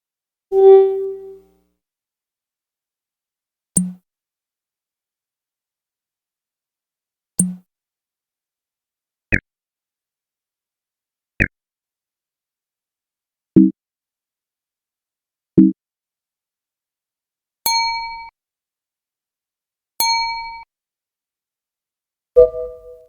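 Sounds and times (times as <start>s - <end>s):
electronic clicks with high blips: 0.5s - 1.4s, 22.4s - 23.0s
low electronic thump: 22.4s - 23.0s
short low electronic bloops: 22.4s - 23.0s.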